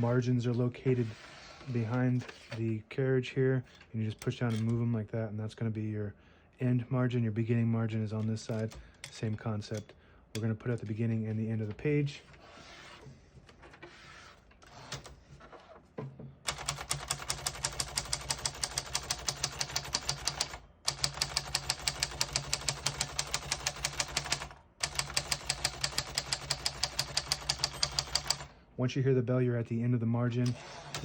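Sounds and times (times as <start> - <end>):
typewriter keystrokes: 16.5 - 28.5.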